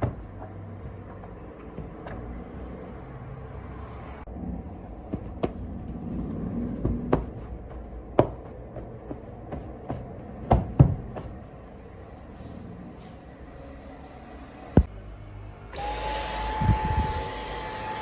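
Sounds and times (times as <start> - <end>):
sharp knocks and clatters: 0.0 - 2.8, 5.0 - 11.5
steady low hum: 0.0 - 13.6.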